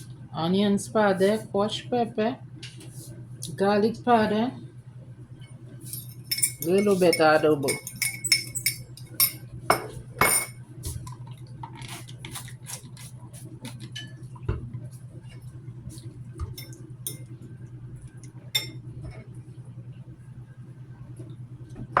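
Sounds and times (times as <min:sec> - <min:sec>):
steady low hum: 0:00.0 - 0:22.0
glass and dishware clinking: 0:06.0 - 0:10.6.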